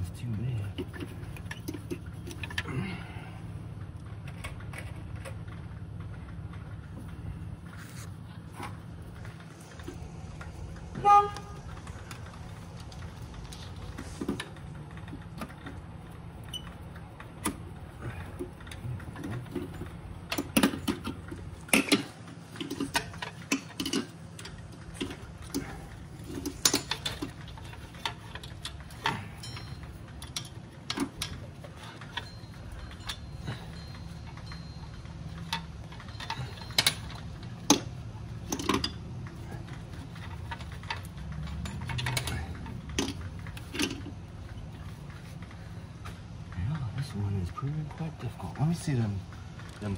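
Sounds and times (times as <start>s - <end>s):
steady low hum: 0.0s - 49.9s
hand tools clinking on metal: 16.4s - 45.7s
ringing metal clink: 28.9s - 37.9s.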